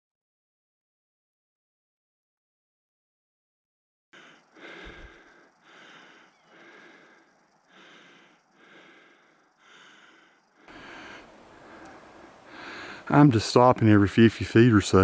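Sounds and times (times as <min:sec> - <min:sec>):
man breathing heavily: 0:04.2 - 0:14.0.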